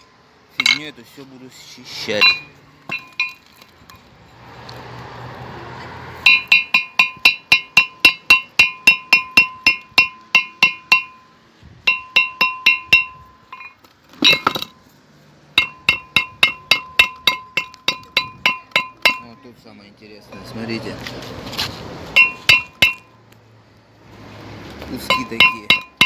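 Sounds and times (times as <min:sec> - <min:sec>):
hammer blows on ringing brake disc: 0:02.1 - 0:03.4, 0:06.2 - 0:14.8, 0:15.5 - 0:19.7, 0:20.3 - 0:20.8, 0:22.1 - 0:23.2, 0:24.9 - 0:26.0.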